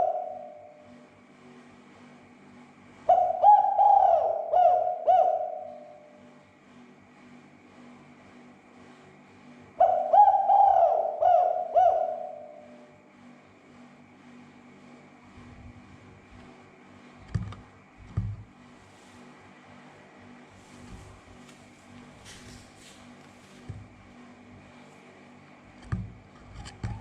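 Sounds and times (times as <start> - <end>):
dove cooing: 0.0 - 0.8, 3.1 - 6.2, 9.8 - 12.9.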